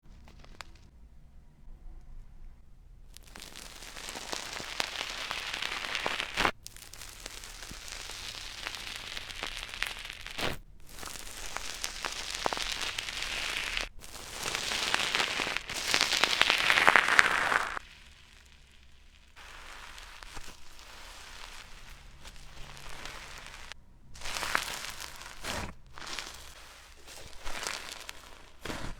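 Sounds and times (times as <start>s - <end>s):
slime crackling and popping: 0.2s - 0.9s, 3.1s - 28.9s.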